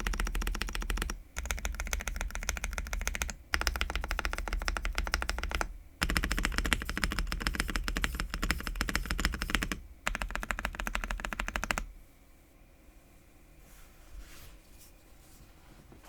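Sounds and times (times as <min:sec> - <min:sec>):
mechanical keyboard typing: 0:00.0 - 0:11.9.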